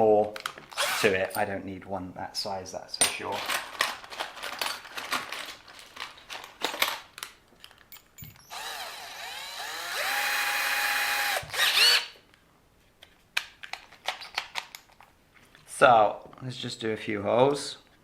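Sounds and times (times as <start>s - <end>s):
power drill whining: 0.8s - 1.1s, 8.4s - 12.2s
clicks and rattles of tool parts: 3.0s - 8.5s, 13.0s - 15.1s.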